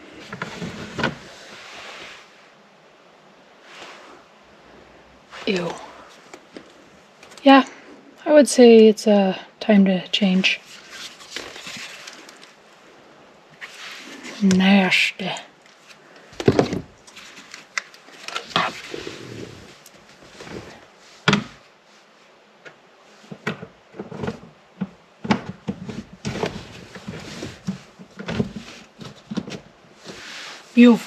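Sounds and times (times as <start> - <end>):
plastic clicks and scraping: 15.7 - 18.9.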